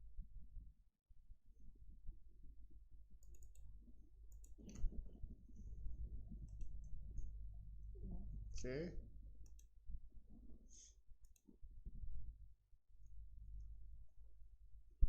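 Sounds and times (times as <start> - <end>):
low steady hum: 1.6 - 15.0
computer mouse clicking: 3.2 - 3.7, 4.3 - 5.0, 9.4 - 9.7.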